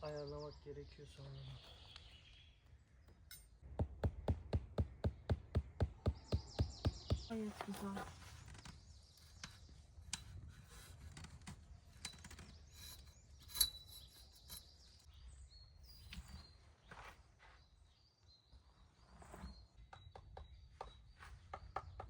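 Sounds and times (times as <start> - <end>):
birds chirping: 0.0 - 3.6, 4.3 - 10.2, 11.6 - 17.0
tent poles clicking and knocking: 3.1 - 14.7.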